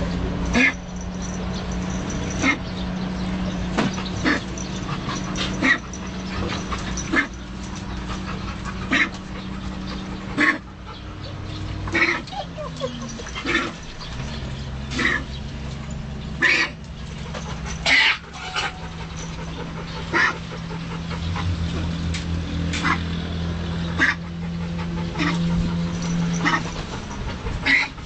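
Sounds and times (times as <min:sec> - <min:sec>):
dog coughing: 0:00.5 - 0:01.0, 0:01.8 - 0:02.8, 0:03.8 - 0:07.4, 0:08.8 - 0:09.2, 0:10.4 - 0:10.7, 0:11.9 - 0:13.8, 0:14.9 - 0:15.4, 0:16.4 - 0:16.8, 0:20.1 - 0:20.4, 0:27.6 - 0:28.0.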